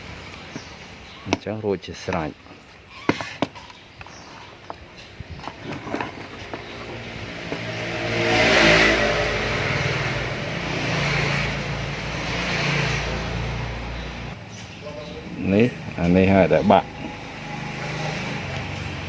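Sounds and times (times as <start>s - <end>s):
motor vehicle engine running: 4.1s - 19.0s.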